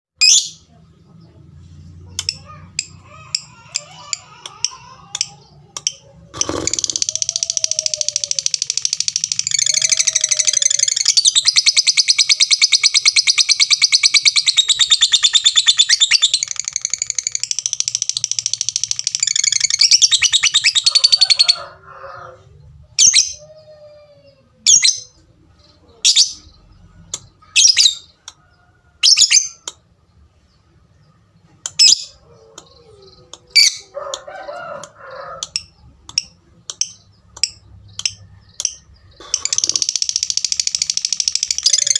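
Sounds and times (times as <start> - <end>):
lovebird rapid chattering trill: 6.4 - 21.0, 35.5 - 41.9
bird sharp chirps: 35.5 - 41.9.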